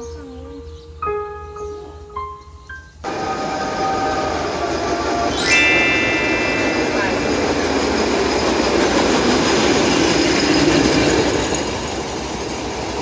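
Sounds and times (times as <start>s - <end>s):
passenger train running past: 3.0s - 13.0s
high ringing tone: 5.0s - 9.0s.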